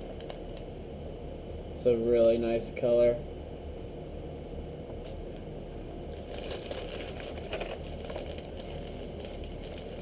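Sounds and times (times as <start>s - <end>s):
steady low hum: 0.0s - 10.0s
plastic packaging crinkling: 6.1s - 10.0s.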